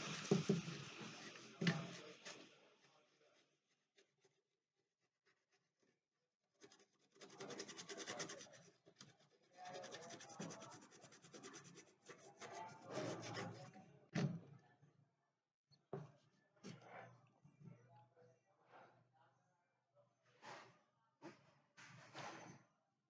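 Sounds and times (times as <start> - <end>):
brush scrubbing: 0.0 - 6.0, 6.6 - 13.8.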